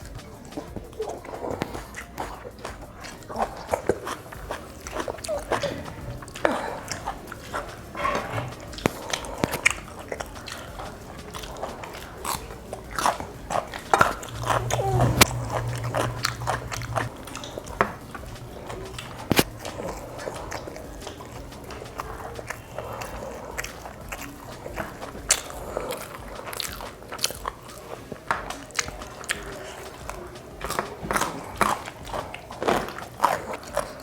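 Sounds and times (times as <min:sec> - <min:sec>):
low hum with gliding tone: 0:00.0 - 0:26.5
biting and chewing food: 0:00.0 - 0:34.0
sharp clicks and crunches: 0:00.0 - 0:34.0.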